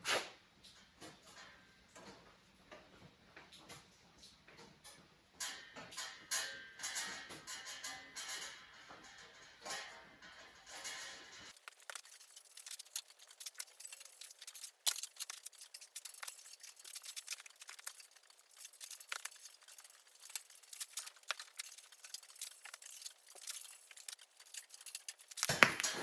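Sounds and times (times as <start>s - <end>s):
steel plate clicking and tapping: 5.4s - 26.0s.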